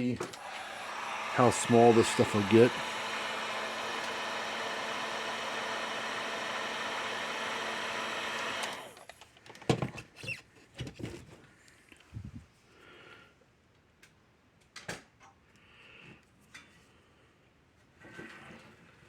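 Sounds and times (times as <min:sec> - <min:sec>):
heat gun running: 0:00.0 - 0:09.2.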